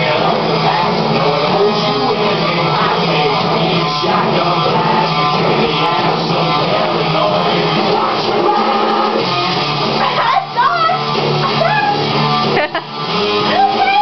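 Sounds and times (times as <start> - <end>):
hard rock with electric guitar: 0.0 - 14.0.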